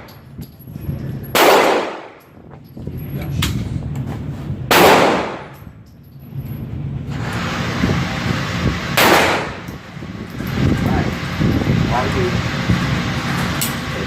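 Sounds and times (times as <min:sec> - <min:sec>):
gunshots with echo: 0:01.4 - 0:02.2, 0:04.7 - 0:05.6, 0:09.0 - 0:09.7.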